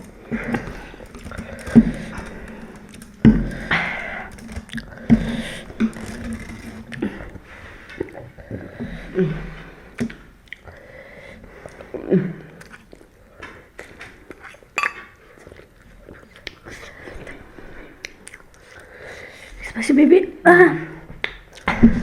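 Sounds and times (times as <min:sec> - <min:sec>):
people chewing noodles: 0:00.0 - 0:19.7, 0:21.2 - 0:22.0.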